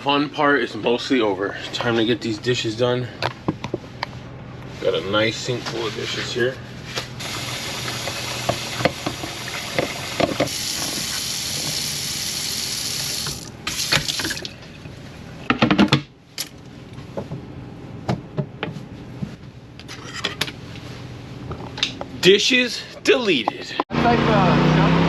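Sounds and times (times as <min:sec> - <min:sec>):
faucet running into sink: 0:07.2 - 0:14.5.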